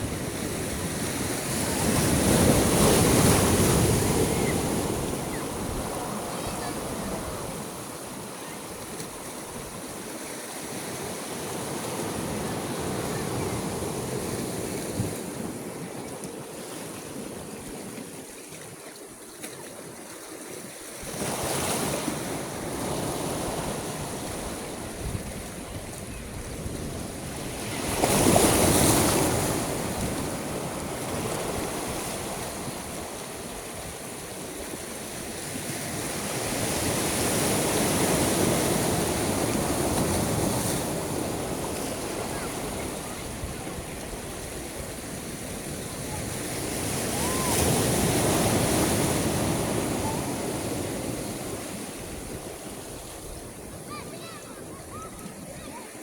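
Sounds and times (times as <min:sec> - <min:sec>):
sea waves breaking: 0:00.0 - 0:56.0
wind rumble on microphone: 0:22.7 - 0:34.8.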